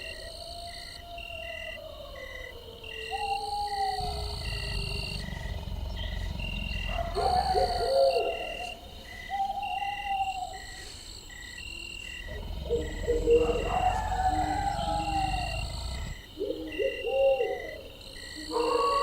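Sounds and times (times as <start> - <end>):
drawn-out hooting calls: 3.2 - 10.6, 12.2 - 19.0.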